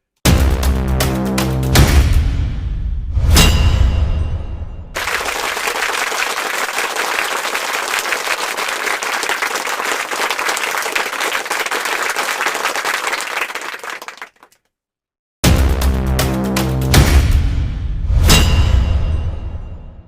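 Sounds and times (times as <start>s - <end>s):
crowd applauding: 5.0s - 14.6s.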